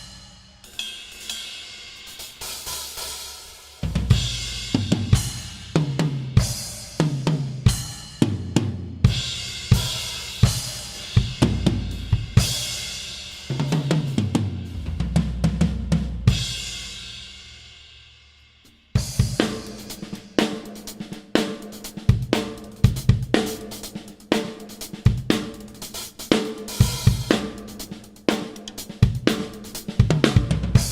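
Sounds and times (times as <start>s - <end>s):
cymbal crashes and hi-hat hits: 0.0s - 5.7s, 19.0s - 29.9s
drum kit playing: 0.0s - 17.9s, 18.6s - 30.9s.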